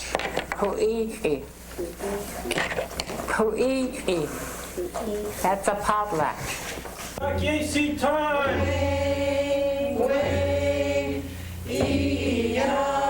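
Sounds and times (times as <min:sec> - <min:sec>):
group singing unaccompanied: 0:07.2 - 0:13.0.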